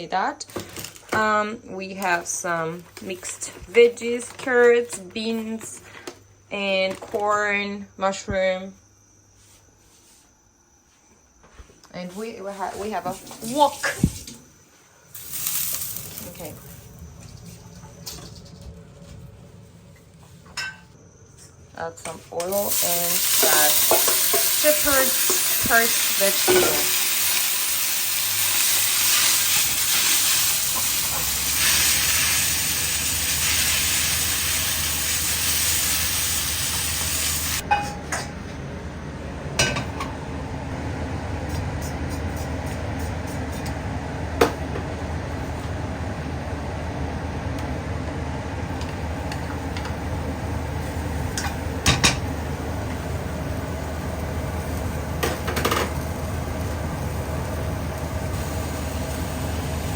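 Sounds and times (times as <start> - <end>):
low hum: 15.1 - 23.0
greens sizzling in hot oil: 15.2 - 16.9, 22.4 - 37.6, 53.5 - 59.9.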